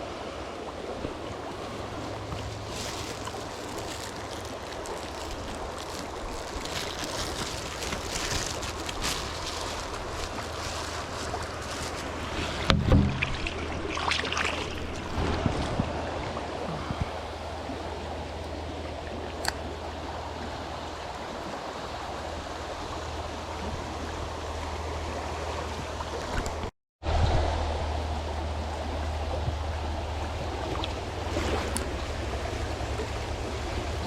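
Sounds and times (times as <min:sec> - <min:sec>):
creek water rushing: 0:00.0 - 0:34.0
loud knocks: 0:12.6 - 0:13.8.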